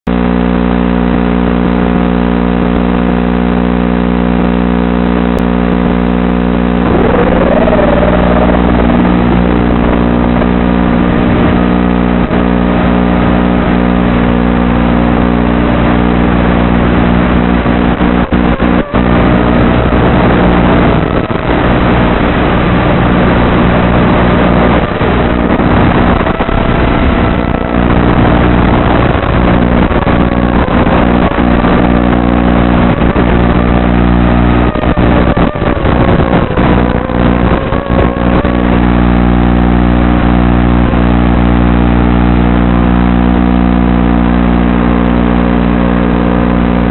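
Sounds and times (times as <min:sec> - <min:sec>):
quadcopter motors buzzing: 0:06.8 - 0:09.7.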